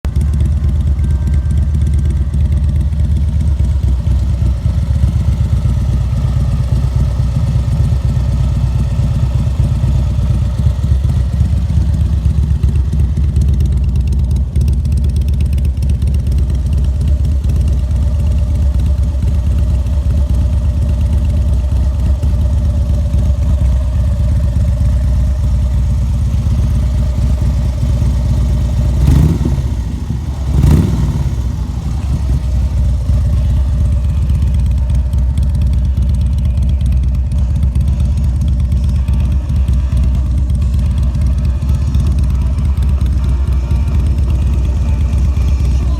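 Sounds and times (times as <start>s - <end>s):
motorcycle engine idling: 0.0s - 45.9s.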